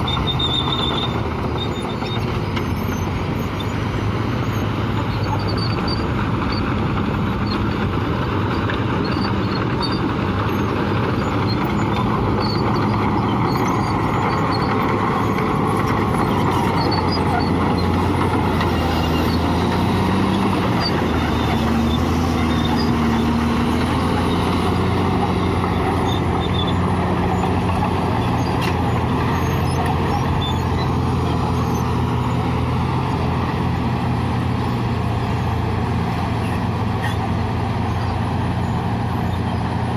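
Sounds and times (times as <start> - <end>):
bulldozer diesel engine under load: 0.0 - 39.9.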